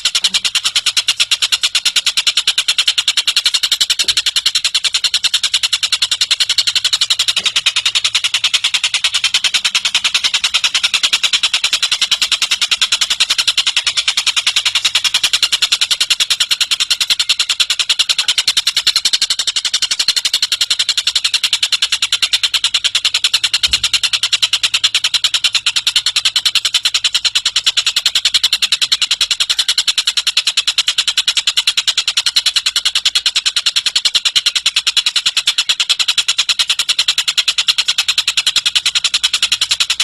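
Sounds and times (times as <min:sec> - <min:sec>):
bird trilling: 0:25.4 - 0:30.0.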